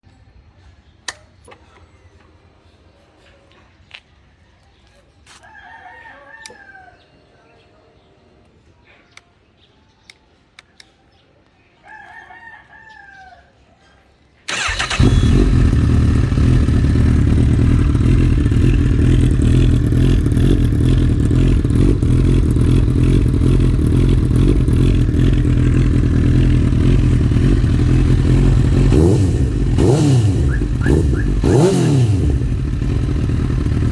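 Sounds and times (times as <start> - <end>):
rooster crowing: 5.4 - 7.3, 11.8 - 13.6
motorcycle engine idling and revving: 14.5 - 33.9.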